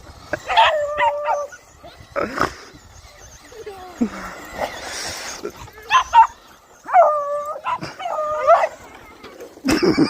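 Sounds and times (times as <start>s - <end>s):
dog yipping: 0.4s - 2.1s, 5.8s - 8.9s
dog baying howls: 0.5s - 1.6s, 5.9s - 8.8s.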